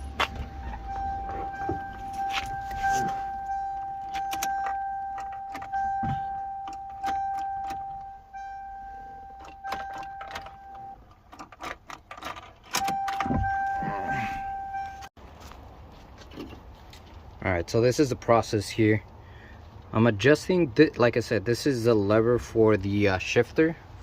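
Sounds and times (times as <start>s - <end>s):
car warning chime: 0.0s - 11.0s, 12.7s - 15.1s.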